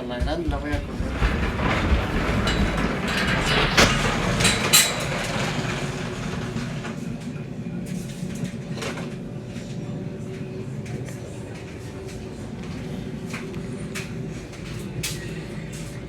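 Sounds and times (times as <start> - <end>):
rattling and handling noise: 0.0 - 9.2.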